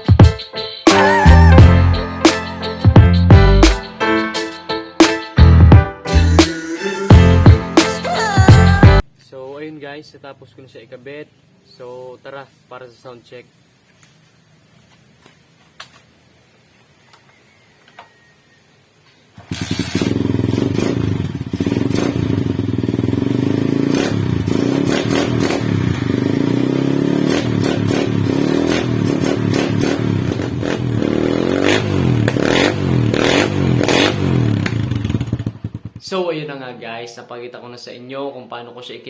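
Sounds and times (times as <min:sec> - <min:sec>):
motorcycle engine starting and running: 0:19.4 - 0:36.2.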